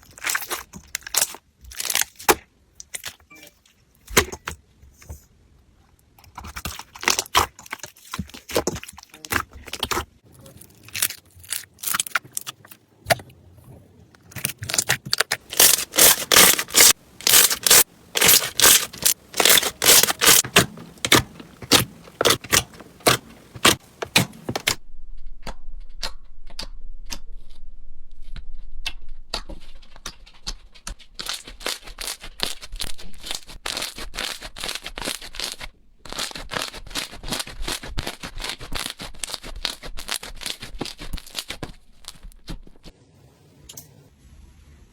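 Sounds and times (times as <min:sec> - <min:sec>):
slime squeezed by hand: 0:15.5 - 0:20.4.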